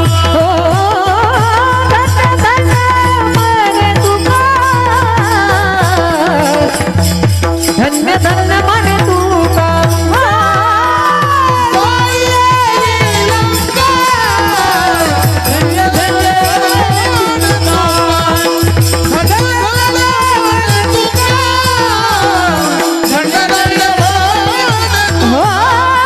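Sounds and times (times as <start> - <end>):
person singing: 7.8 - 26.0.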